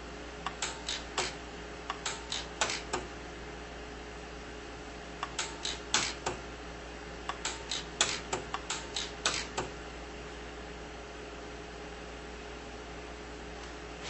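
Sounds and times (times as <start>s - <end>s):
welder arc snaps: 0.5s - 3.1s, 5.2s - 6.4s, 7.3s - 9.7s.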